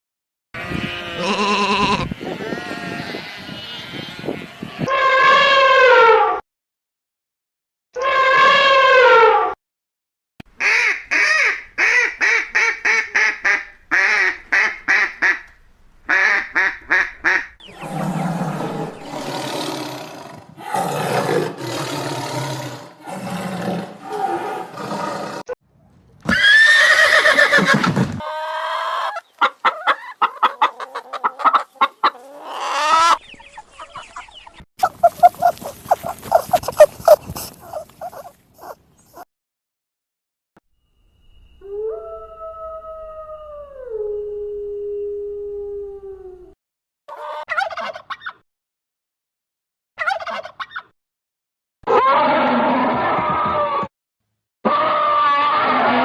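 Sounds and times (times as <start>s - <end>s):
long loud animal call: 0.6s - 6.2s, 54.6s - 56.0s
rapidly repeated animal calls: 28.3s - 39.2s.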